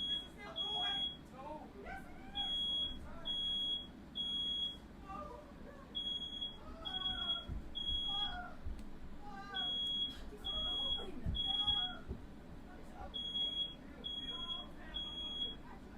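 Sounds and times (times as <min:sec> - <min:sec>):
smoke alarm beeping: 0:00.0 - 0:01.3, 0:02.4 - 0:04.8, 0:06.0 - 0:08.4, 0:09.5 - 0:12.0, 0:13.1 - 0:15.6.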